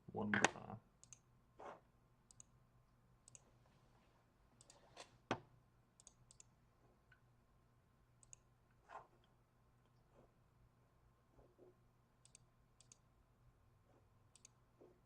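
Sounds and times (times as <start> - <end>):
computer mouse clicks: 0.4 - 1.3, 2.3 - 2.6, 3.2 - 3.5, 4.6 - 4.9, 6.0 - 6.5, 8.2 - 8.5, 12.2 - 13.1, 14.3 - 14.6.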